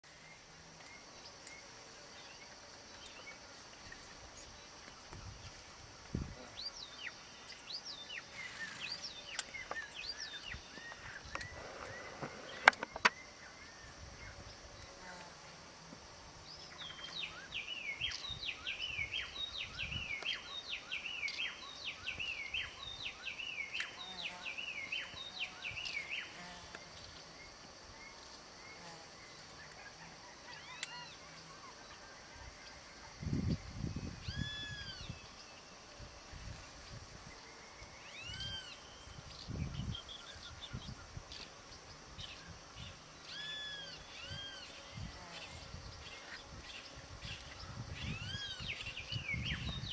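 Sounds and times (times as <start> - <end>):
steady high hiss: 0.1 - 49.9
birds chirping and whistling: 7.0 - 13.6, 33.5 - 35.3, 46.0 - 49.9.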